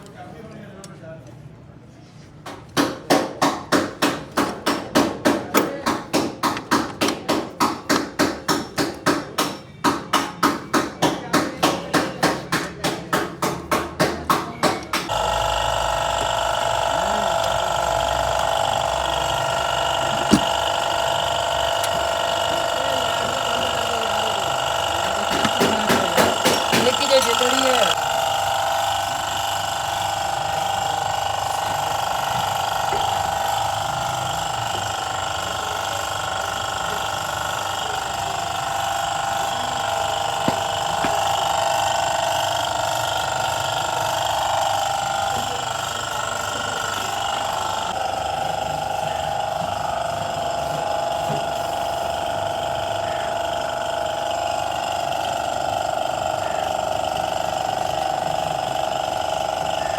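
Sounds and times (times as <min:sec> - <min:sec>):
motor whining: 0:14.8 - 0:59.9.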